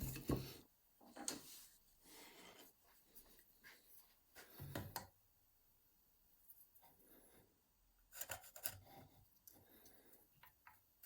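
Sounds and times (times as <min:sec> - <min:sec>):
faint scrapes and rubs: 0:01.1 - 0:04.6.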